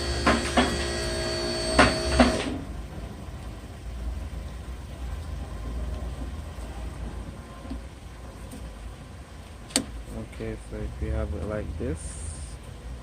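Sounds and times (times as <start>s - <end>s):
small motor whining: 0.0s - 2.6s.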